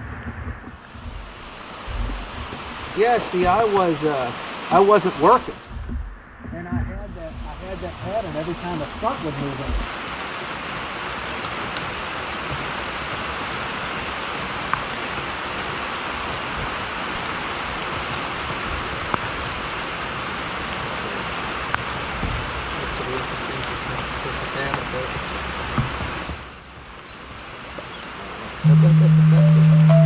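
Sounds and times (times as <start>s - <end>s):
single raindrop hits: 0.0s - 13.2s
steady rain hiss: 0.0s - 30.0s.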